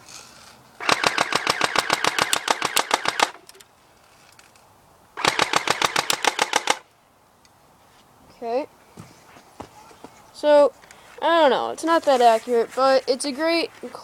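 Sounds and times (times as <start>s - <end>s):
airsoft gun full auto bursts: 0.8s - 3.4s, 5.2s - 6.8s.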